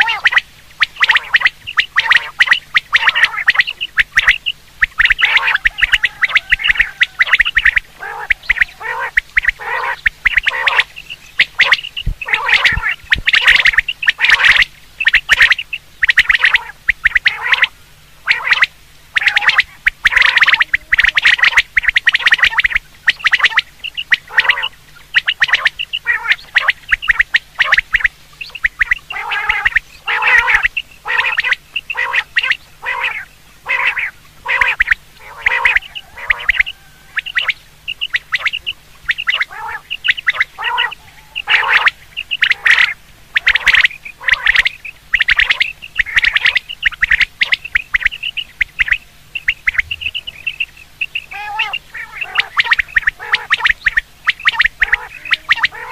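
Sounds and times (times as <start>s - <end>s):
quail calling: 0.0s - 55.9s.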